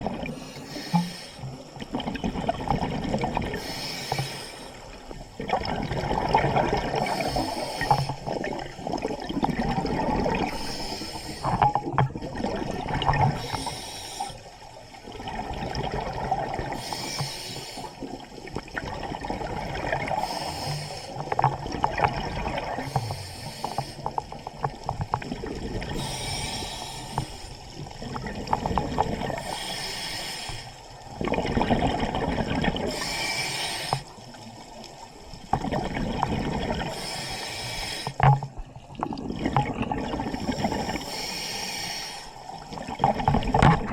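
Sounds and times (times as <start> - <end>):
exhaled air bubbling underwater: 0.0 - 43.9
regulator hiss: 16.8 - 18.0, 26.0 - 27.5, 29.4 - 30.8, 32.9 - 34.2, 36.9 - 38.2, 40.9 - 42.4.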